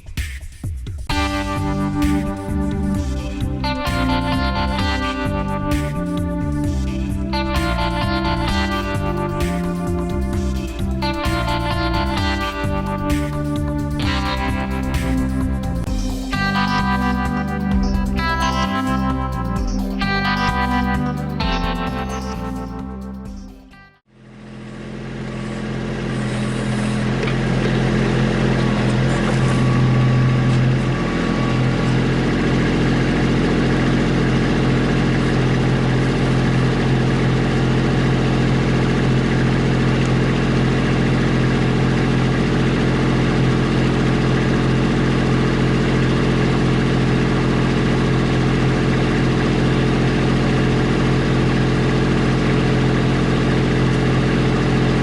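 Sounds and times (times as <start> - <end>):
diesel tractor engine running: 1.1 - 23.4, 24.2 - 55.0.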